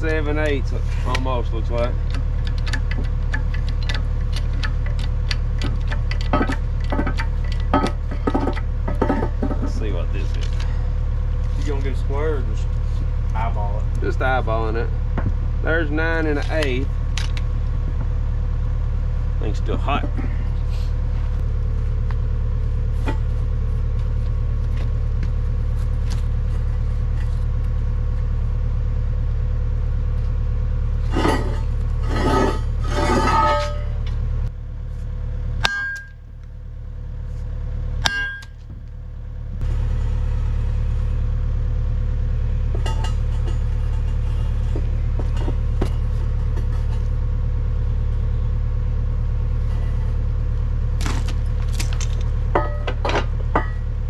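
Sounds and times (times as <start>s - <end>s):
engine running with low rumble: 0.0s - 54.0s
metallic clanks: 2.0s - 10.0s, 42.7s - 47.0s, 51.0s - 53.9s.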